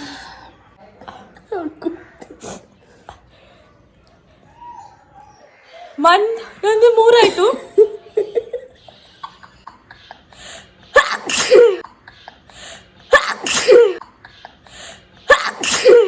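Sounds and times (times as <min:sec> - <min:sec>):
person sneezing: 0:11.0 - 0:11.8, 0:13.2 - 0:14.0, 0:15.3 - 0:16.0.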